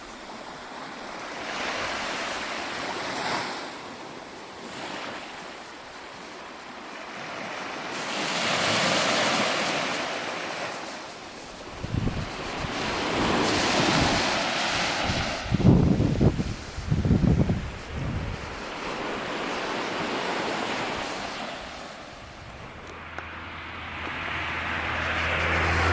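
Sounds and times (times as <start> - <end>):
sea waves washing onto beach: 0.0 - 25.9
wind buffeting microphone: 11.5 - 25.9.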